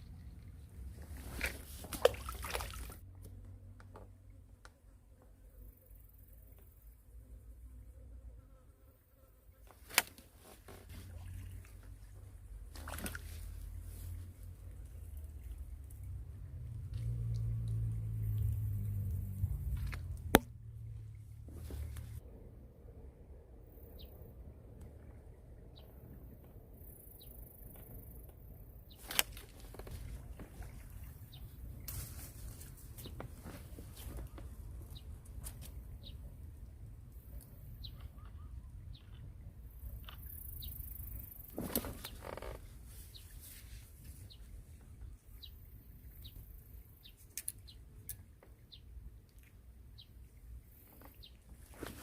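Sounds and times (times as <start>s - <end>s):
low rumble: 13.4s - 26.8s
bird chirping: 37.5s - 41.0s.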